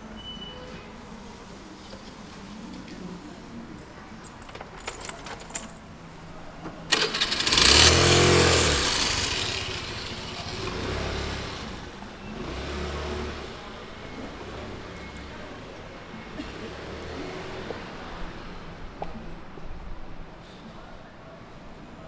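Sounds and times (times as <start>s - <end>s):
vehicle engine revving: 6.9s - 15.5s.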